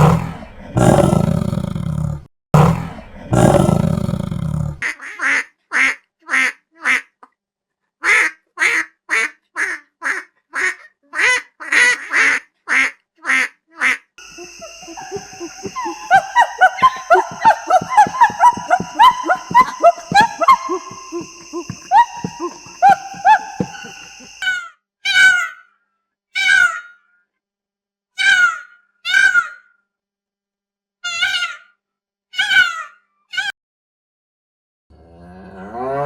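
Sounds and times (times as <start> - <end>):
duck quacking: 4.8 - 7.1, 8.0 - 24.3
small birds chirping: 14.2 - 24.6.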